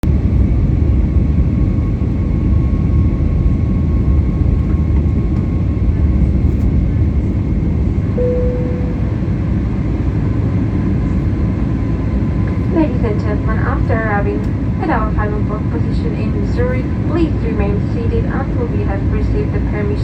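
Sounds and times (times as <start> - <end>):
airplane cabin rumble: 0.0 - 20.0
faint engine whine: 0.1 - 20.0
short tone: 8.2 - 9.7.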